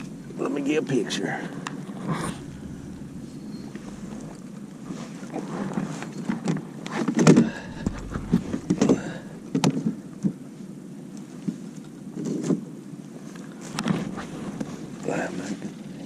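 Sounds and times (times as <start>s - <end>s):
knocks and thumps in boat: 7.2s - 10.0s.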